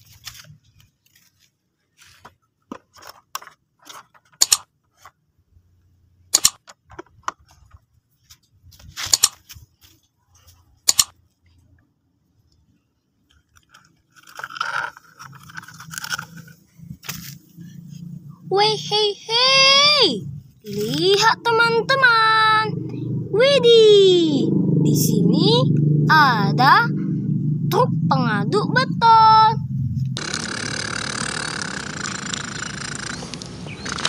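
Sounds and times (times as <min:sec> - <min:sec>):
plastic rattle: 0:02.1 - 0:05.2, 0:06.4 - 0:07.9, 0:13.3 - 0:17.4
plastic toys clicking and knocking: 0:02.7 - 0:05.1, 0:06.4 - 0:07.8, 0:10.9 - 0:11.1.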